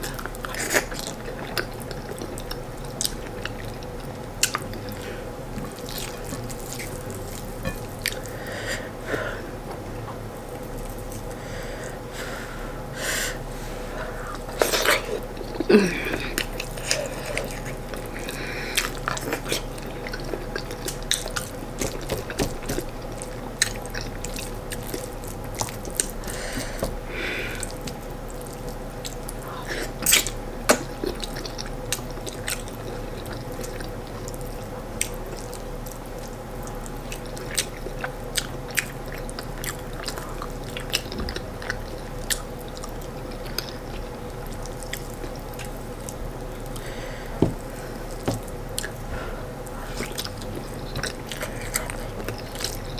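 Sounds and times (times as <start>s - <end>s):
chewing with wet mouth clicks: 0.0s - 5.0s, 5.6s - 8.4s, 14.3s - 27.0s, 27.6s - 46.9s, 47.6s - 52.9s
faint steady hum: 0.0s - 52.9s.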